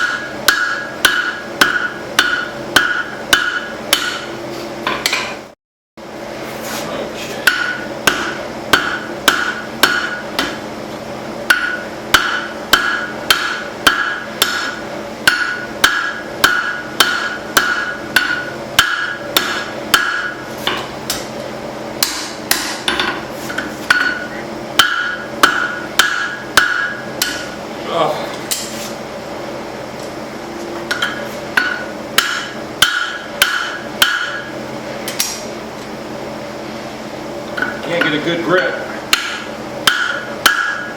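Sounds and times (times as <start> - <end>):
hammer striking metal on anvil: 0.0 - 5.4, 7.4 - 10.6, 11.5 - 21.2, 22.0 - 23.2, 23.9 - 27.6, 30.9 - 34.6, 39.1 - 40.9.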